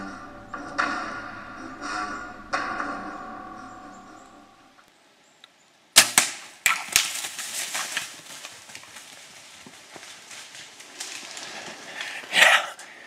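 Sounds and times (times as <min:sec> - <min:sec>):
bow firing crack: 0:06.0 - 0:08.0
animal crashing through brush: 0:06.0 - 0:11.9.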